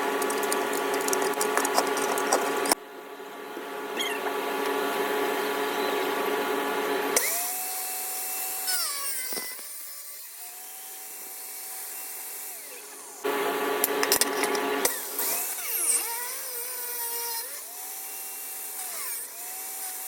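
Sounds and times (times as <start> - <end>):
electric grinder motor whining: 0.0 - 2.8, 4.3 - 20.0.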